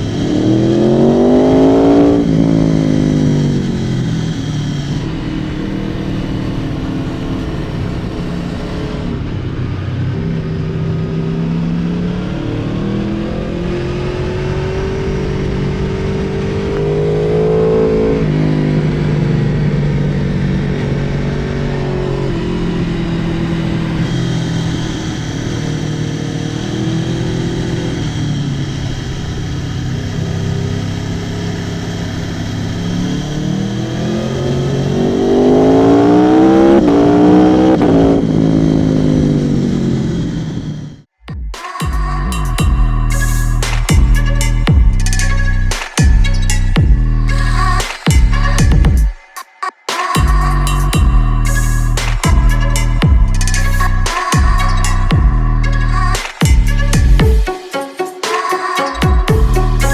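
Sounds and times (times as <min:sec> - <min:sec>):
motorcycle engine accelerating: 0:00.0 - 0:41.1.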